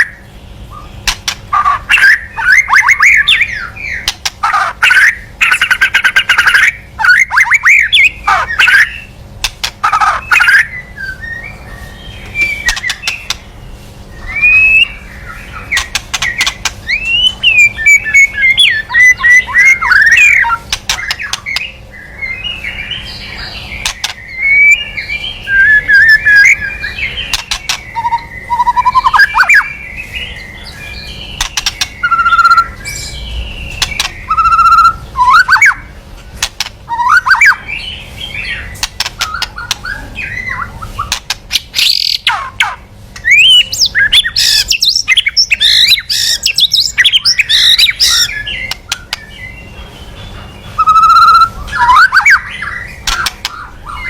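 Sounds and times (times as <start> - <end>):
bird singing whistled song: 0.0 - 9.2, 9.8 - 13.4, 14.1 - 35.9, 36.9 - 54.0.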